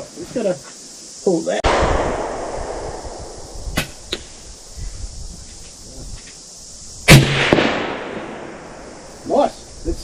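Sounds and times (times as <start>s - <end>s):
rifle shot echo: 1.6s - 4.7s, 7.1s - 8.7s.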